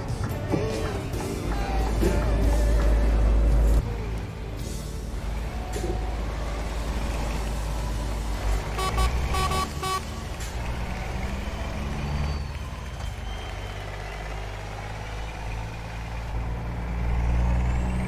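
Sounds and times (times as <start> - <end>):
diesel truck engine rumbling: 0.0 - 18.0
short beeps: 8.8 - 10.1.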